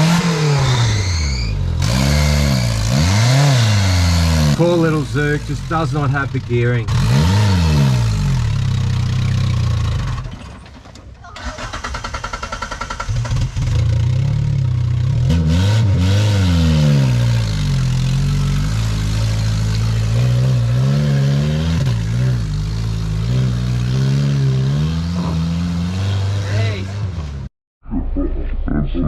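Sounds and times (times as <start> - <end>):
engine revving: 0.0 - 10.5, 11.4 - 27.5
engine starter cranking: 9.9 - 14.0.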